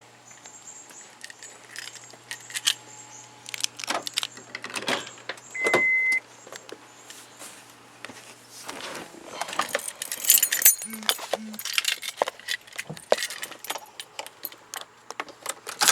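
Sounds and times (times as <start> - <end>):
car keys jangling: 1.2 - 2.8, 9.5 - 14.9
high electronic beep: 5.6 - 6.2.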